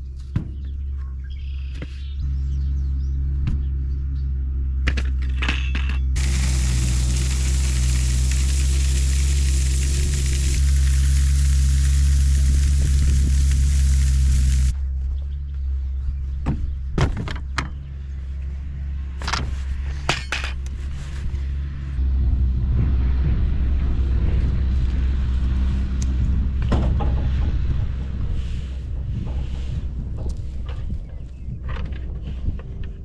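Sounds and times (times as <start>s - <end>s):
vehicle engine running: 6.2s - 15.4s, 20.8s - 31.3s
sharp clanks and knocks: 26.2s - 33.0s.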